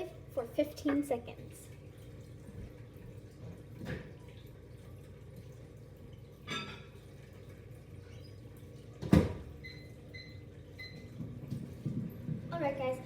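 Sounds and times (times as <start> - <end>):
microwave beeps: 9.4 - 11.4.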